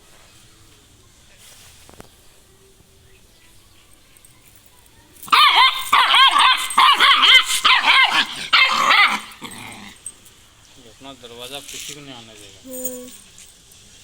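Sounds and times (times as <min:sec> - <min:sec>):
dog barking rapidly: 0:05.3 - 0:10.0.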